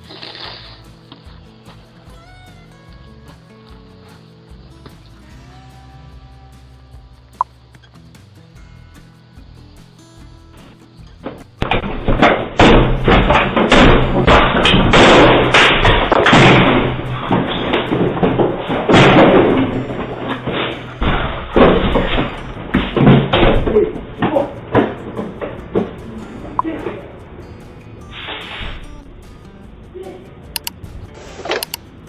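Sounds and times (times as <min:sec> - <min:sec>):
background music: 0:00.0 - 0:32.0
loud thumps and knocks: 0:10.2 - 0:27.0.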